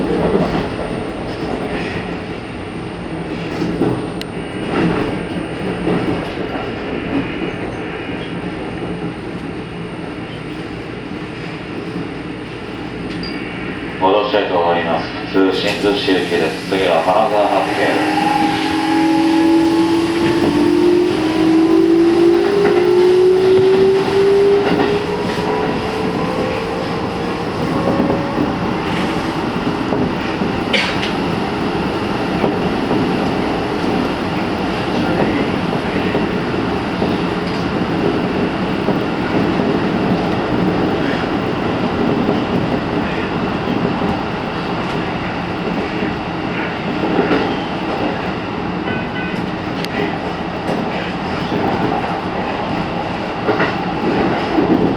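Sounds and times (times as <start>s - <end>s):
wheels running on rail: 15.6s - 54.9s
train traction motor whine: 15.8s - 34.6s.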